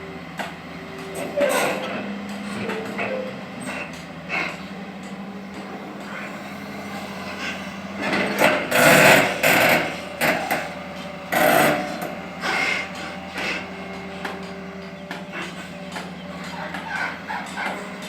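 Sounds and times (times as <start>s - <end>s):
excavator engine humming: 0.0s - 18.0s.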